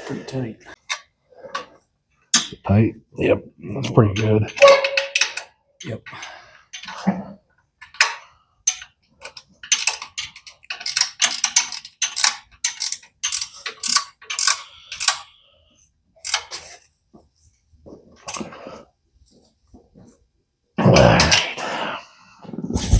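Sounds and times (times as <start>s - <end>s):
ratchet wrench clicking: 8.7s - 15.3s, 16.2s - 16.5s.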